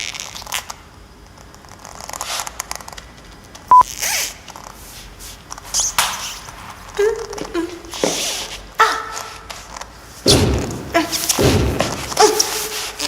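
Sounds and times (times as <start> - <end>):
high latex squeak: 3.7 - 4.8.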